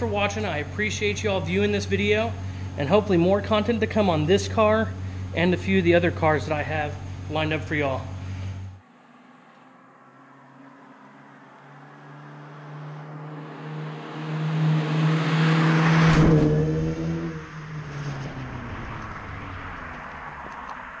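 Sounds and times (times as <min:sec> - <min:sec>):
car driving past: 0:07.9 - 0:21.0.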